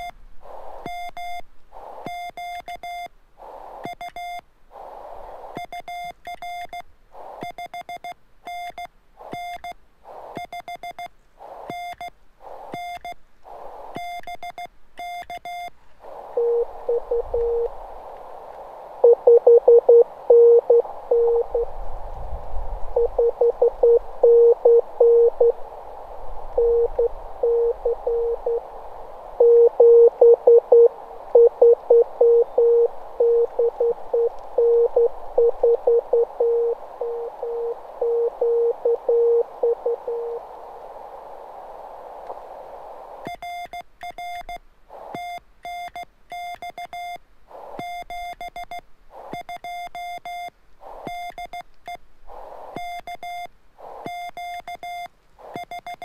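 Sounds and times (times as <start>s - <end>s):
receiver hiss: 0.0s - 56.0s
morse code tone: 16.4s - 17.7s, 19.0s - 21.7s, 23.0s - 25.6s, 26.6s - 28.6s, 29.4s - 40.4s.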